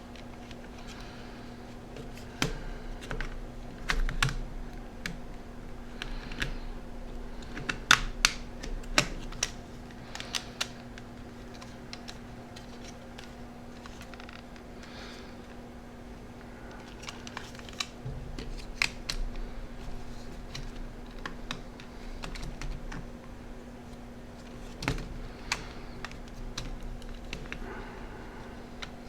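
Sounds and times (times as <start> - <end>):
steady low hum: 0.0 - 29.0
plastic parts clicking: 6.0 - 6.6, 7.3 - 14.4, 16.7 - 23.1, 24.4 - 27.7.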